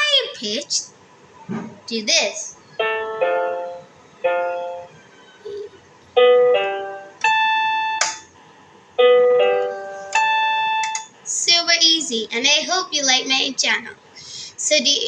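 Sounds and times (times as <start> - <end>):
piano notes: 2.8 - 5.6, 6.2 - 8.2, 9.0 - 11.0.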